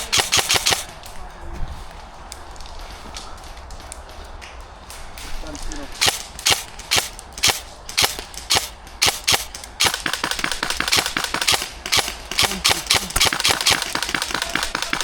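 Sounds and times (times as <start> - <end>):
airsoft guns firing: 0.0 - 1.4, 4.9 - 15.0.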